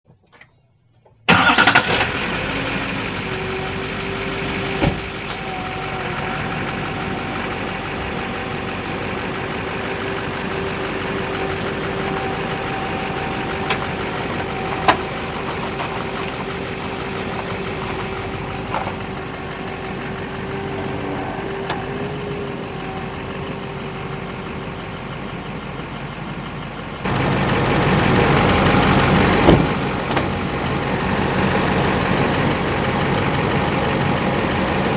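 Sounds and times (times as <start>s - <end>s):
diesel pickup engine running: 1.3s - 34.9s.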